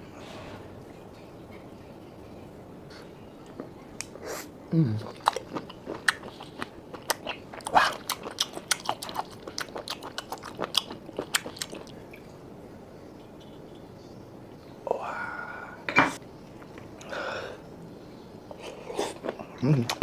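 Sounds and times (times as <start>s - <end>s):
chewing with wet smacks and crunches: 5.0s - 12.3s.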